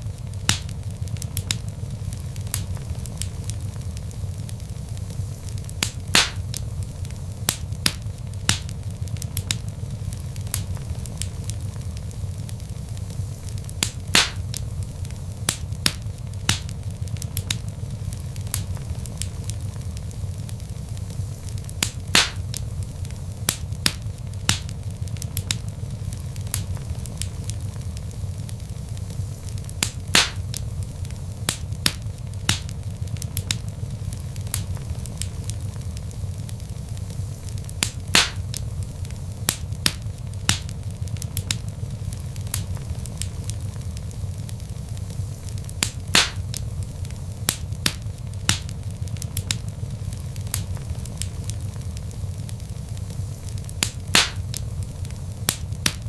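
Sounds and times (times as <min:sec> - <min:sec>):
burning logs rumbling: 0:00.0 - 0:56.0
fire popping: 0:00.0 - 0:56.0
wood fire crackling: 0:00.0 - 0:56.0.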